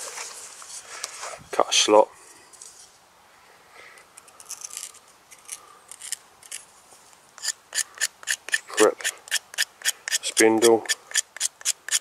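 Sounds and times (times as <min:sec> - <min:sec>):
wood rubbing on wood: 0:07.4 - 0:12.0.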